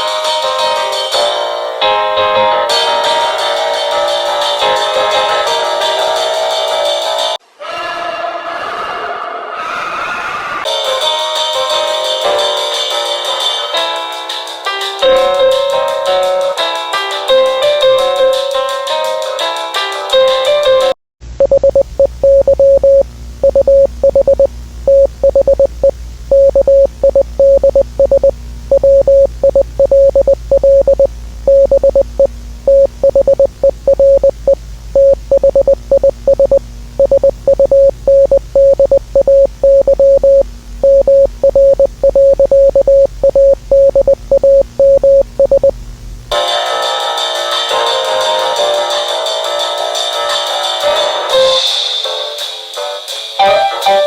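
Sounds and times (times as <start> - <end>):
music: 0.0 - 7.4, 10.7 - 21.0, 46.3 - 54.0
steady low hum: 21.2 - 46.4
morse code beeping: 21.4 - 45.8.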